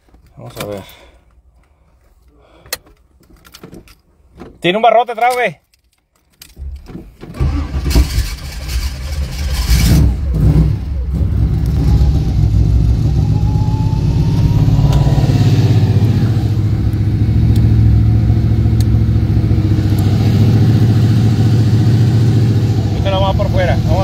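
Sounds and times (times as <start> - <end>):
car engine revving and idling: 7.9 - 24.0.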